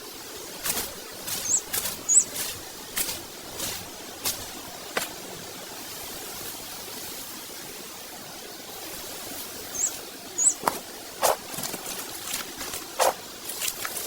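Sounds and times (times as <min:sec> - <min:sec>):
outdoor background hiss: 0:00.0 - 0:14.0
high bird chirps: 0:01.2 - 0:03.1, 0:09.7 - 0:10.7.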